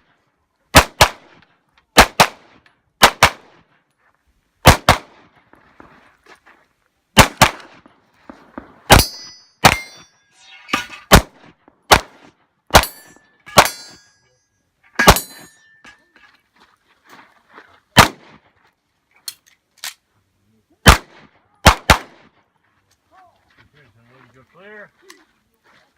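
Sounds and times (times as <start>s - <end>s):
pistol shots: 0.7s - 1.4s, 2.0s - 3.6s, 4.6s - 5.3s, 7.2s - 7.9s, 8.5s - 10.1s, 11.1s - 14.0s, 15.0s - 15.4s, 18.0s - 18.4s, 20.8s - 22.4s
steel targets ringing: 8.9s - 11.1s, 12.8s - 16.2s.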